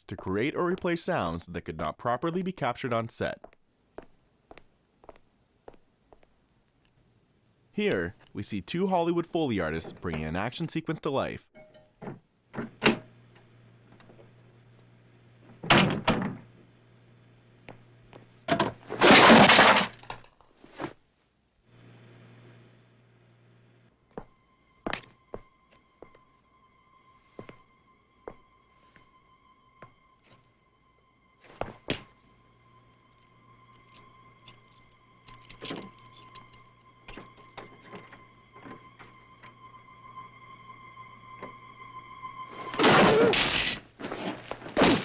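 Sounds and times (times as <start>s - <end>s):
loud breaking crash: 19.0s - 20.1s, 44.7s - 45.0s.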